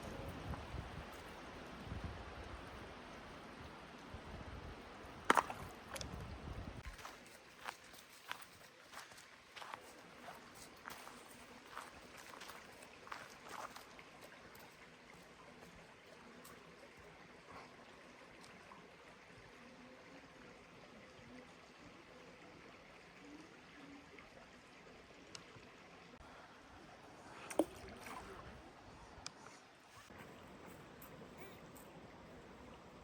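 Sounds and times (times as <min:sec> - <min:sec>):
stream water flowing: 0:00.0 - 0:33.0.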